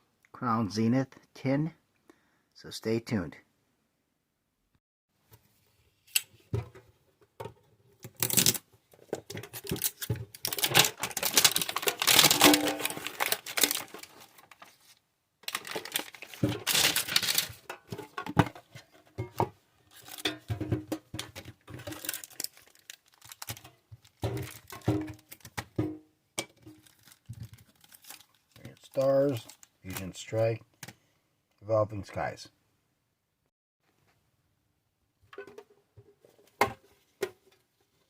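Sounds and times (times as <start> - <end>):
plastic shrink wrap crinkling: 8.1 - 18.3, 19.9 - 20.3, 21.3 - 25.6, 26.6 - 30.3.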